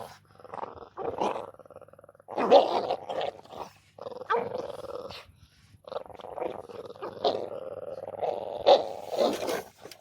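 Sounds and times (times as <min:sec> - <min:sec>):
dogs growling: 0:00.0 - 0:10.0
dog snarls: 0:05.9 - 0:09.9.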